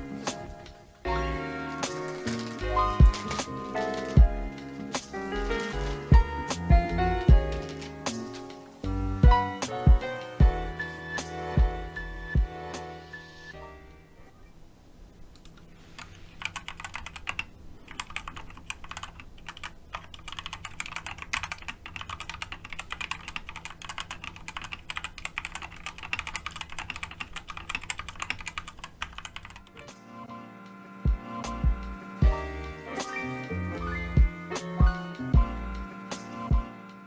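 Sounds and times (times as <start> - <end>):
music: 0.0 - 14.5, 29.2 - 37.0
mechanical keyboard typing: 1.7 - 4.2, 15.2 - 29.9.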